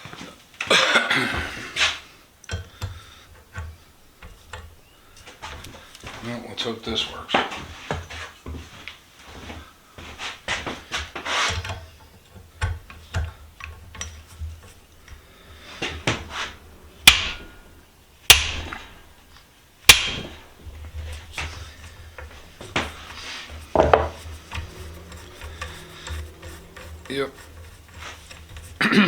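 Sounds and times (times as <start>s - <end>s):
hammer striking metal vise: 15.9s - 19.2s, 19.9s - 28.7s.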